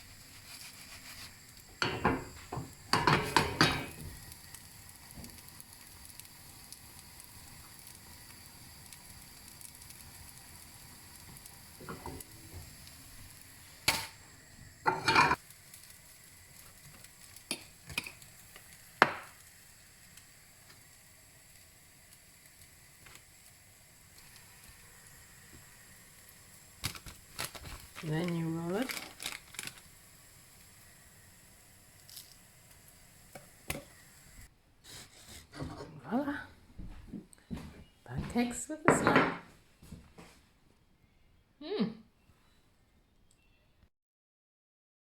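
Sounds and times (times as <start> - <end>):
pancake sizzling in pan: 0.0 - 35.4
metal utensil clattering on pan: 1.8 - 2.3, 2.9 - 4.0, 14.9 - 15.4.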